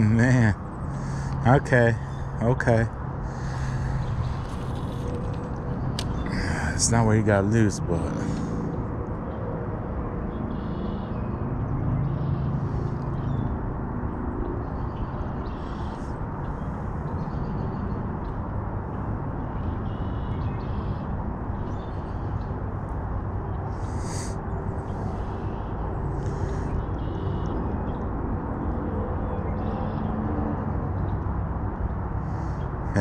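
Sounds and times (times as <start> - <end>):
outdoor background noise: 0.0 - 33.0
short bird calls: 23.7 - 27.6.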